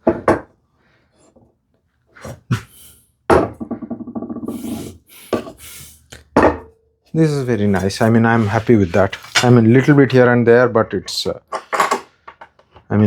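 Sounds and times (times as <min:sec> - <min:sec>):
wooden panel and tools clattering: 0:07.8 - 0:10.2, 0:11.5 - 0:12.9.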